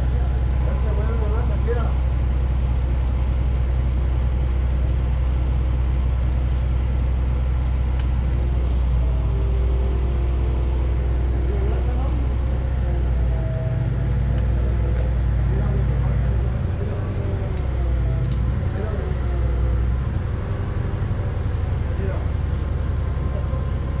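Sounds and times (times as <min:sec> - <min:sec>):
heavy engine rumbling: 0:00.0 - 0:24.0
faint distant voices: 0:09.1 - 0:19.8.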